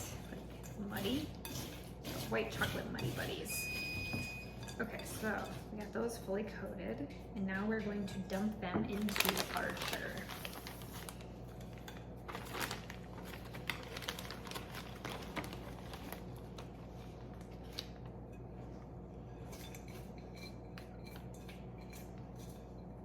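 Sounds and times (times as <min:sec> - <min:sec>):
utensil scraping a bowl: 0:00.0 - 0:08.6, 0:19.2 - 0:23.0.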